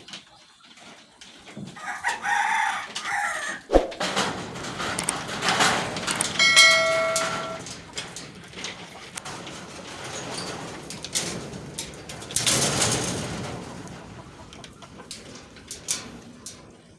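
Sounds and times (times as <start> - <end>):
rooster crowing: 1.8 - 3.7.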